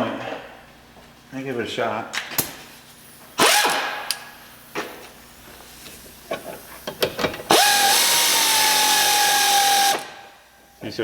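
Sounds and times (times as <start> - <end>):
power drill whining: 3.4 - 4.2, 7.5 - 10.2.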